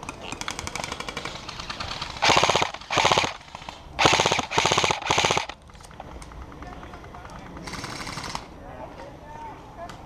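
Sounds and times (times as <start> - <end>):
airsoft rifle full-auto bursts: 0.5 - 5.6, 7.6 - 8.5.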